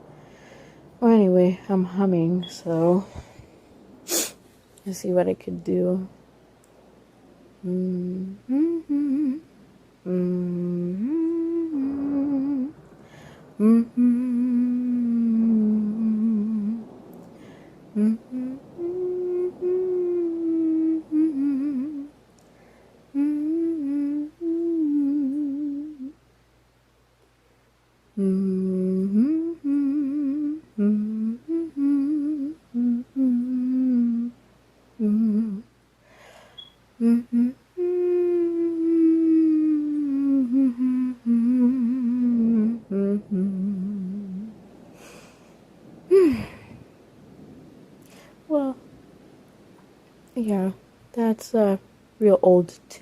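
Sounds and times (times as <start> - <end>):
woman humming a slow tune: 7.6 - 17.0, 17.9 - 22.2, 23.1 - 26.3, 28.1 - 34.4, 35.0 - 35.8, 36.5 - 45.3, 46.1 - 46.9, 48.1 - 48.8.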